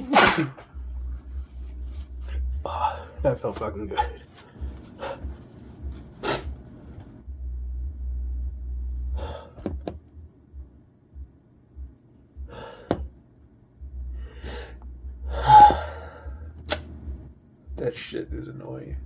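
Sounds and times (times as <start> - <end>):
man gasping breaths: 12.4 - 13.1.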